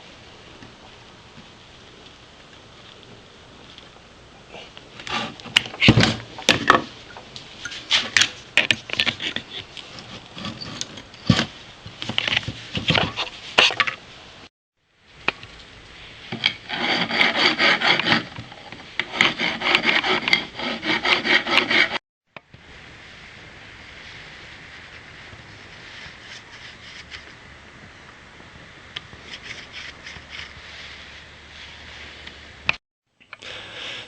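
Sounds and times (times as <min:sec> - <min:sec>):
fast rasping strokes: 0:16.4 - 0:22.0.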